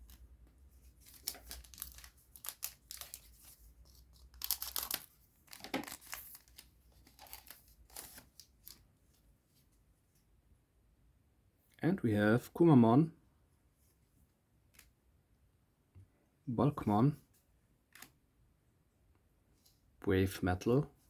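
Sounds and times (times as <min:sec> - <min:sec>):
foil pack tearing and crinkling: 0:01.0 - 0:03.4, 0:04.2 - 0:06.6.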